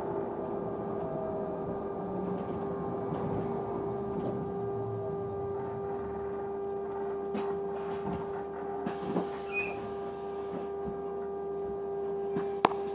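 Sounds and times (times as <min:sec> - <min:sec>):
bus running noise: 0:00.0 - 0:12.9.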